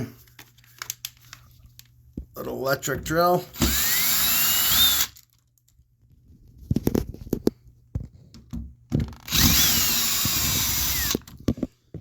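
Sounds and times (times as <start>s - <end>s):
cordless drill whining: 3.6s - 5.2s, 9.2s - 11.4s.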